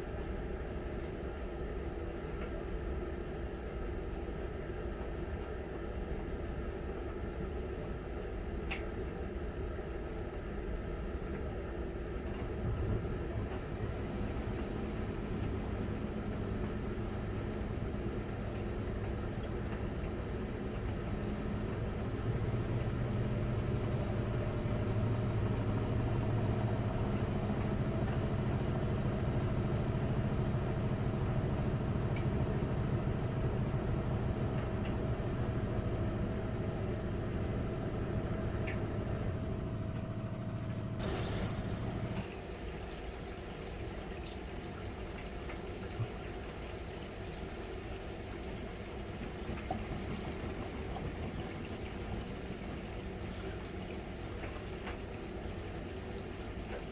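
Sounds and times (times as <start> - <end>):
washing machine motor hum: 12.4 - 56.9
running water: 13.5 - 56.9.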